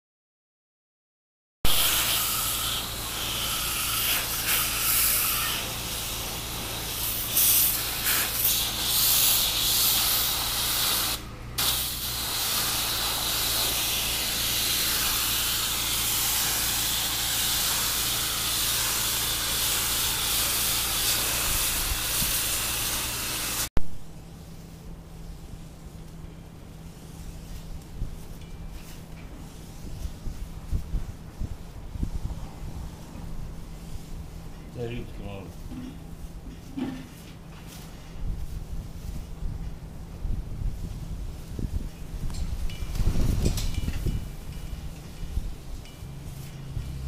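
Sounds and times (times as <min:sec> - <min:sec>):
high-pressure spray jet hissing: 0:01.7 - 0:23.7
pump droning: 0:01.8 - 0:23.7.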